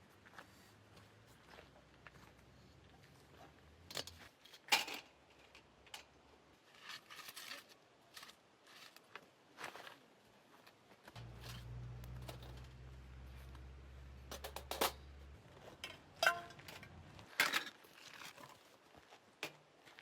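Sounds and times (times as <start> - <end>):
low steady hum: 11.2 - 17.3.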